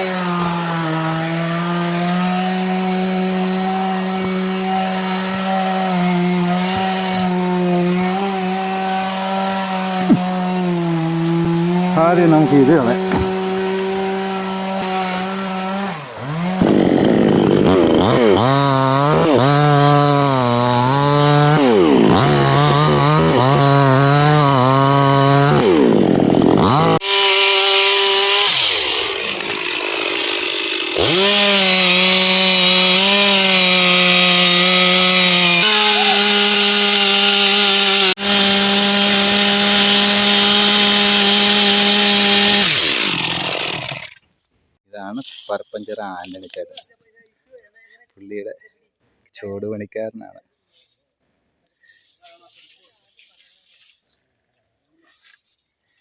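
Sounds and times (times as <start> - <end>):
chainsaw cutting wood: 0.0 - 44.3.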